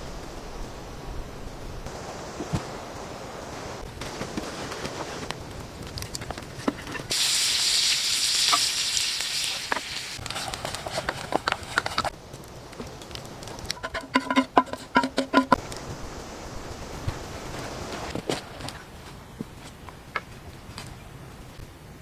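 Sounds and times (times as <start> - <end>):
loud sizzling hiss: 0.0 - 19.0
clicks and knocks: 13.7 - 15.6.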